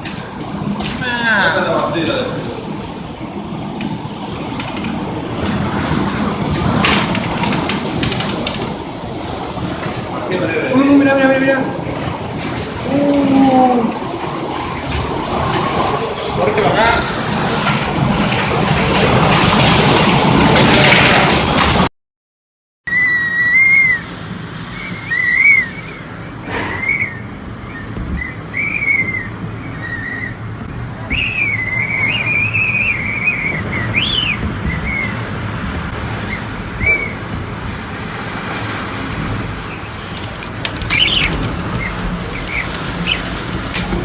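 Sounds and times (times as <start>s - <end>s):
high wavering whistle: 22.9s - 30.4s, 31.1s - 35.2s.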